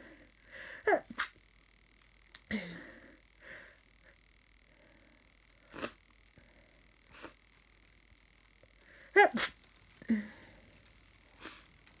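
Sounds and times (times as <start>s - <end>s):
person sneezing: 9.2s - 9.6s
person sniffling: 11.4s - 11.7s.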